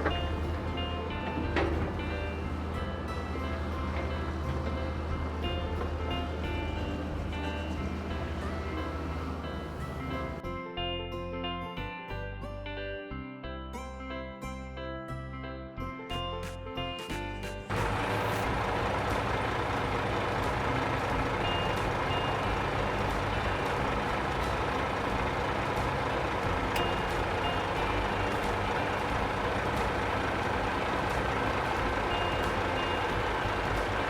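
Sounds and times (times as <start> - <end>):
heavy vehicle engine running: 0.0 - 10.5, 17.5 - 34.0.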